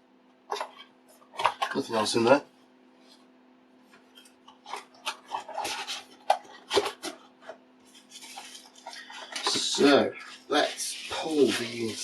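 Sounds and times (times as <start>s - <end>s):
cardboard packaging handled: 4.6s - 12.0s
scraping rub: 7.9s - 12.0s.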